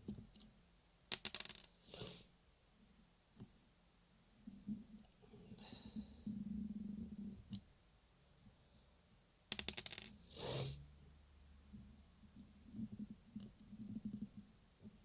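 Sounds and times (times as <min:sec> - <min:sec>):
short breathy hiss: 0:01.8 - 0:02.3, 0:10.3 - 0:10.8.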